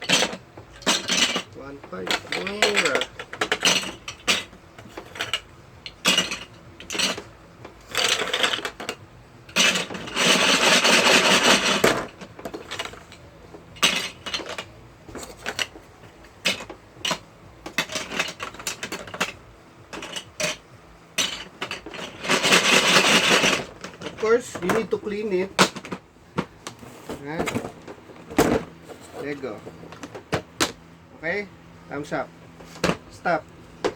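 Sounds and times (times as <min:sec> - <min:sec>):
plastic bricks clattering: 0:00.0 - 0:13.2, 0:13.8 - 0:15.8, 0:16.4 - 0:20.6, 0:21.2 - 0:25.0.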